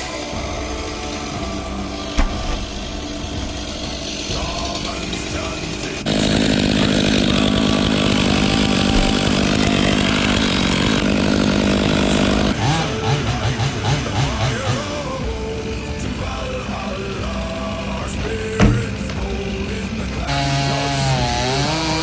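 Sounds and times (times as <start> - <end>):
rock music: 0.0 - 6.1, 12.7 - 20.3
chainsaw revving: 0.0 - 22.0.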